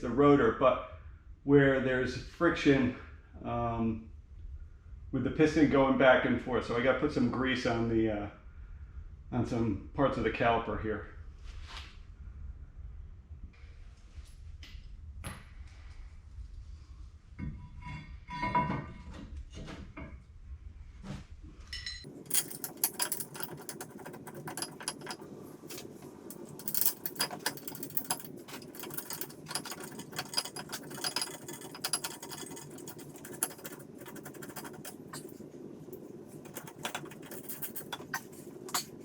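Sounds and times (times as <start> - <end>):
metal parts and tools clinking: 21.8 - 39.0.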